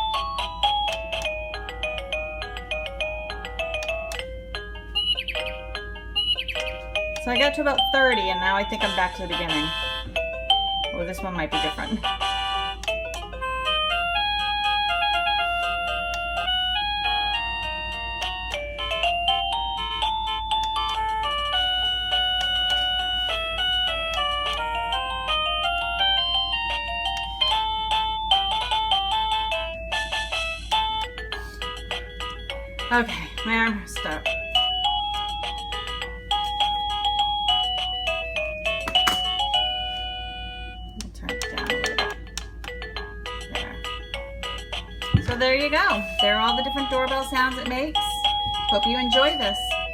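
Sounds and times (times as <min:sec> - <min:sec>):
doorbell electronic jingle: 0:00.0 - 0:49.9
steady low hum: 0:00.0 - 0:49.9.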